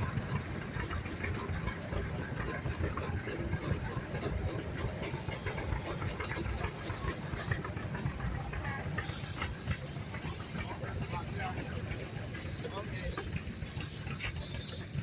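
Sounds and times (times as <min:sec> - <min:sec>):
steam engines rumbling: 0:00.0 - 0:15.0
steam hissing: 0:00.0 - 0:15.0.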